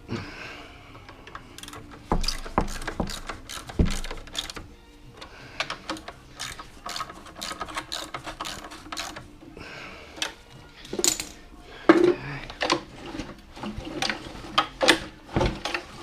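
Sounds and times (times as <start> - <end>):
hand tools knocking on metal: 1.6 - 4.6.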